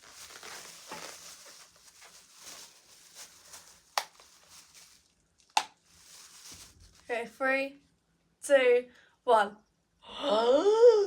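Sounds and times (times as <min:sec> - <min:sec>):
packaging rustling: 0:00.0 - 0:07.1.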